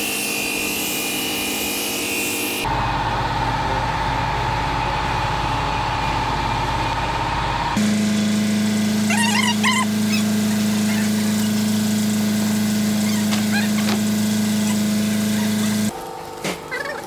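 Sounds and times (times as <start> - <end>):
engine humming steadily: 2.7 - 16.0.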